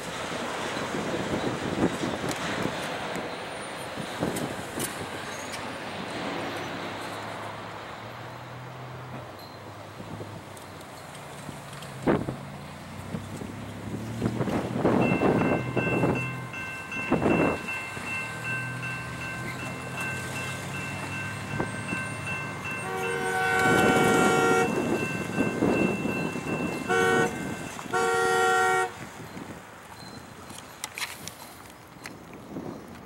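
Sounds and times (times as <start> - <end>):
locomotive engine humming: 0.0 - 30.9
train air horn blasts: 22.3 - 29.0.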